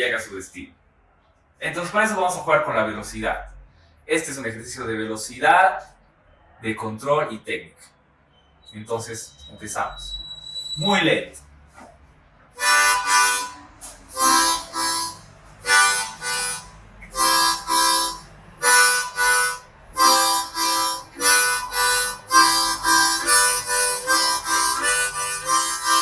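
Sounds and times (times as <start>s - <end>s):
harmonica playing train rhythm: 12.6s - 26.0s.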